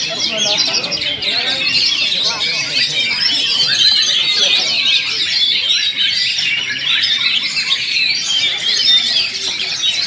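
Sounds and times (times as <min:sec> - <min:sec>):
birds singing in chorus: 0:00.0 - 0:10.0.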